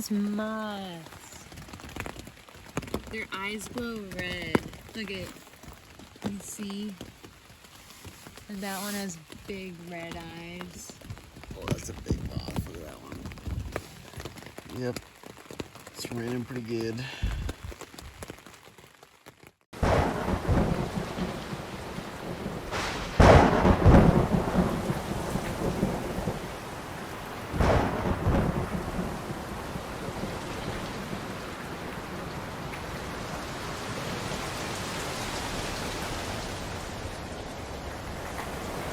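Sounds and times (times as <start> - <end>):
steady rain: 0.0 - 38.9
loud thunder rumbles: 19.8 - 38.9.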